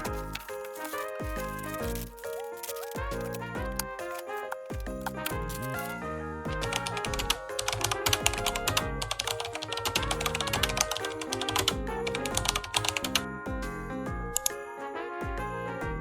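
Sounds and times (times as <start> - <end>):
light bouncy background music: 0.0 - 16.0
rapid clicks: 5.0 - 13.2.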